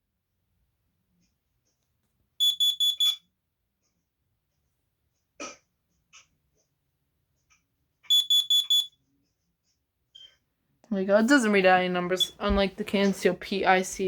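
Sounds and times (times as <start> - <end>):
carbon monoxide alarm beeps: 2.4 - 3.2, 8.1 - 9.0, 12.2 - 12.5.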